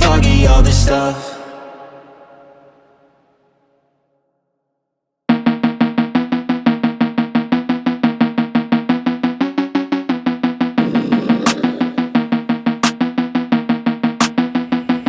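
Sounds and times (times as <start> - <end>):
background song: 0.0 - 3.5.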